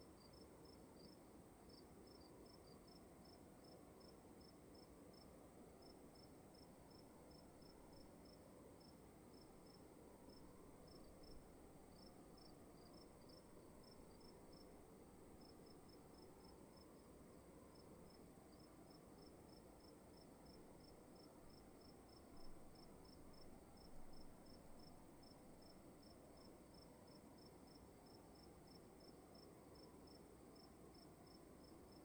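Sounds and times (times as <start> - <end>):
low room tone hiss: 0.0 - 32.0
cricket chirping: 0.1 - 32.0.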